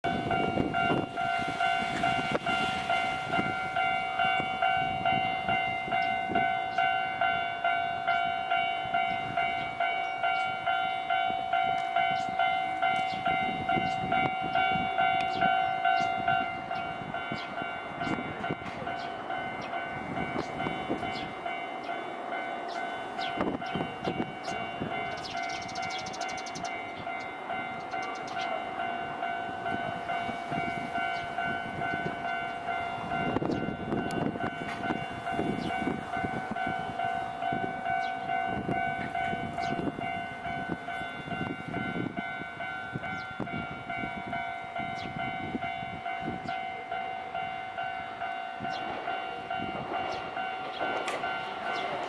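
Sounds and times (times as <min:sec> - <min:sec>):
level crossing warning bell: 0:00.0 - 0:52.0
train passing with clicking wheels: 0:00.0 - 0:52.0.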